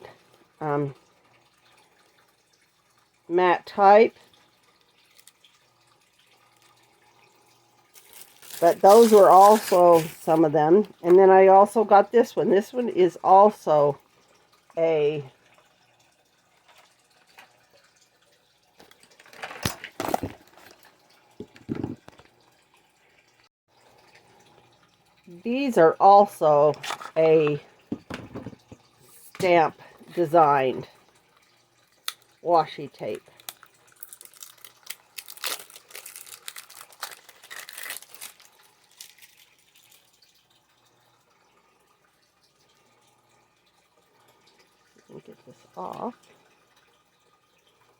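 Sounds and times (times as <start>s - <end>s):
plastic packaging crinkling: 7.9s - 10.4s, 33.4s - 40.2s
tape rolls rustling and clicking: 8.0s - 10.4s, 33.4s - 40.0s.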